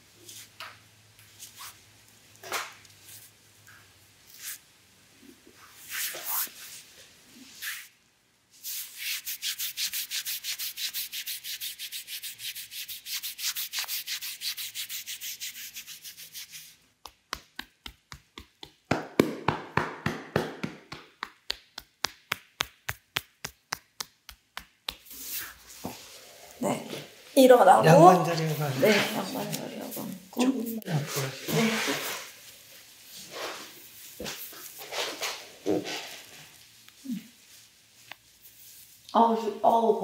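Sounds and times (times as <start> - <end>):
hands rubbing skin: 4.3 - 4.6, 5.8 - 6.8, 8.6 - 26.4, 28.2 - 39.1.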